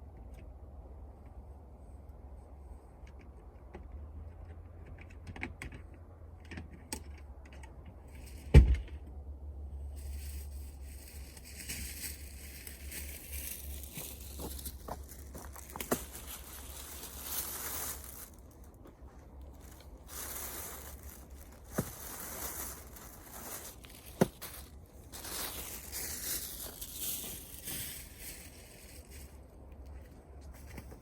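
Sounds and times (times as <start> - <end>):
bonfire crackling and hissing: 10.0 - 29.5.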